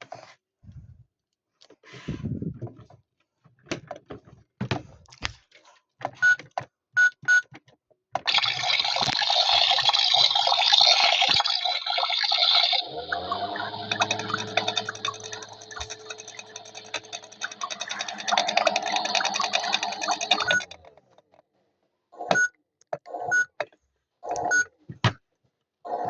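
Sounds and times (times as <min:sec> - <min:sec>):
running water rushing: 0:08.3 - 0:20.7
toy clicks and knocks: 0:13.7 - 0:21.2.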